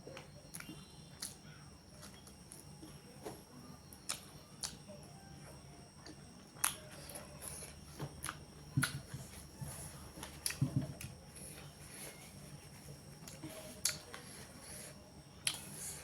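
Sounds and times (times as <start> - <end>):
person chewing food: 0.0 - 2.8, 6.0 - 16.0
faint steady hum: 0.0 - 16.0.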